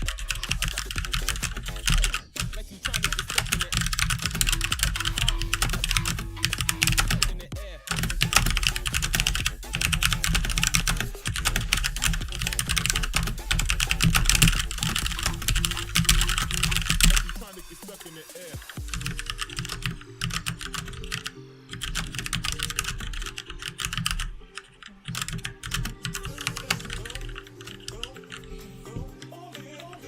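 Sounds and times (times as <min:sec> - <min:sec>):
fast mechanical keyboard typing: 0:00.0 - 0:30.0.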